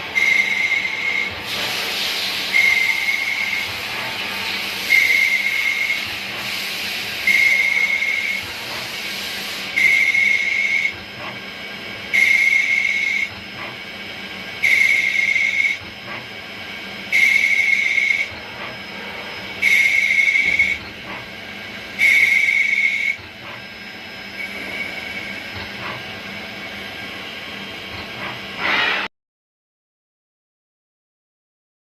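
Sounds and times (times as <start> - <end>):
cnc machine whistle with hiss: 0.1 - 11.3, 12.0 - 13.8, 14.6 - 16.2, 17.0 - 21.0, 21.9 - 25.6, 28.6 - 29.1.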